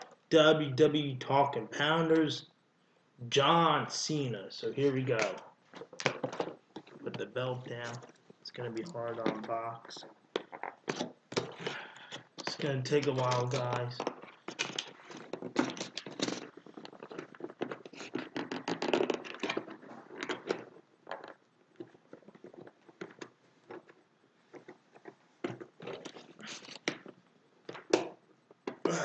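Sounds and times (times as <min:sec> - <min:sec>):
packaging scraping and crackling: 0:10.4 - 0:27.9.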